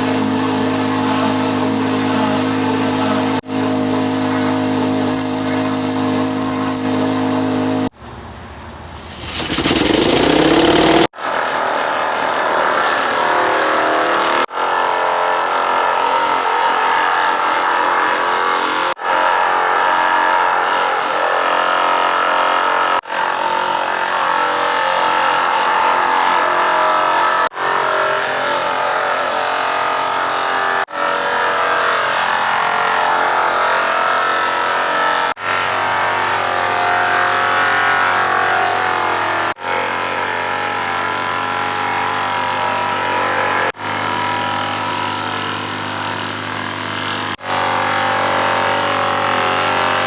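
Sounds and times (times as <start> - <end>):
pressure washer spraying: 0.0 - 7.9, 8.5 - 11.1.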